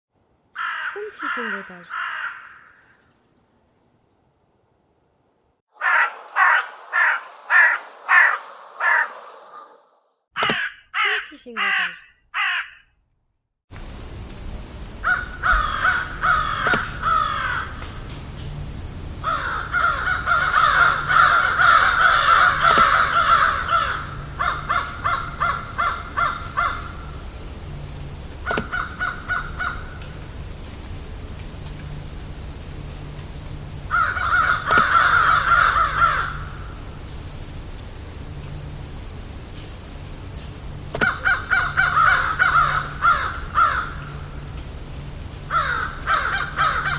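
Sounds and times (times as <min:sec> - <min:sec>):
crows cawing: 0:00.6 - 0:03.1, 0:05.7 - 0:09.8, 0:10.4 - 0:12.9, 0:15.0 - 0:17.8, 0:19.2 - 0:27.2, 0:28.4 - 0:30.2, 0:33.9 - 0:36.8, 0:41.0 - 0:44.4, 0:45.5 - 0:46.9
steady high hiss: 0:05.8 - 0:09.8, 0:13.7 - 0:46.9.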